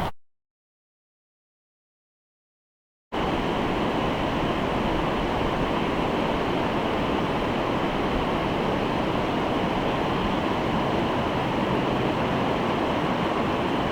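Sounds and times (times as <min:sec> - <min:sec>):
river water rushing: 0:03.2 - 0:13.9.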